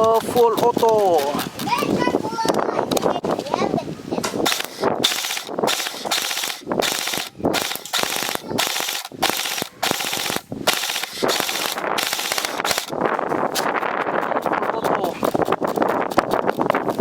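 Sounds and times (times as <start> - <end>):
airsoft gun firing bursts: 4.4 - 13.8.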